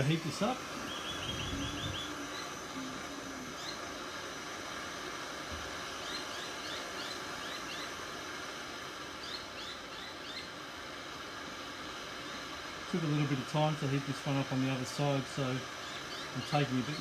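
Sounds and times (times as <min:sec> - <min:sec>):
blowtorch flame hissing: 0:00.0 - 0:17.0
small bird chirping: 0:00.8 - 0:03.8, 0:06.0 - 0:08.0, 0:09.2 - 0:10.6, 0:15.8 - 0:17.0.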